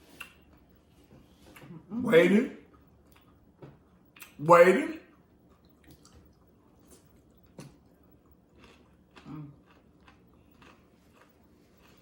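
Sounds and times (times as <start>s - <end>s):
chewing crunchy chips: 5.1s - 12.0s
low hum of voice: 9.2s - 9.6s.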